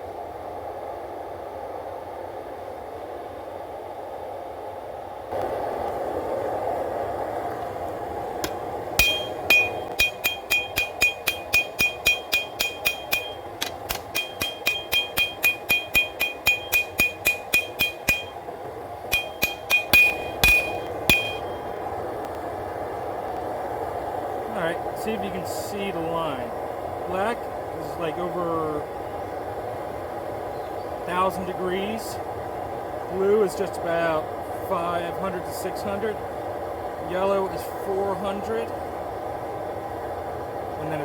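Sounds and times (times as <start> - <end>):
steady rushing noise: 5.1 - 38.8
hammer striking steel on anvil: 8.4 - 18.5, 19.1 - 21.8.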